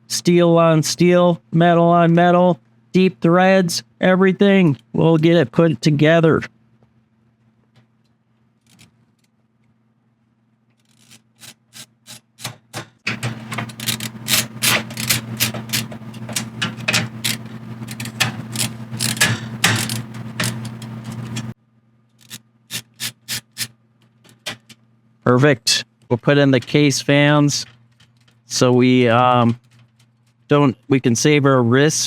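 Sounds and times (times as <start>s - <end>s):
steady low hum: 0.0s - 32.0s
ratcheting screwdriver clicking: 10.8s - 21.5s, 22.2s - 23.7s.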